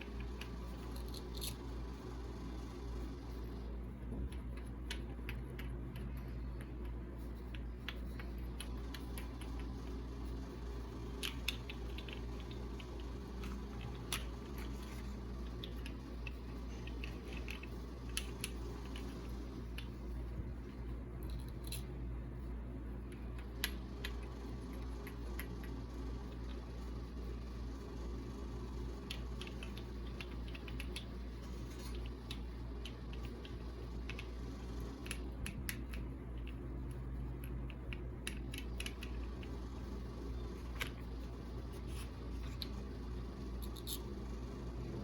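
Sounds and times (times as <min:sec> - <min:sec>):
steady low hum: 0:00.0 - 0:45.0
clicks and taps of small objects: 0:04.1 - 0:10.0, 0:11.1 - 0:20.0, 0:29.0 - 0:34.4, 0:35.0 - 0:39.6.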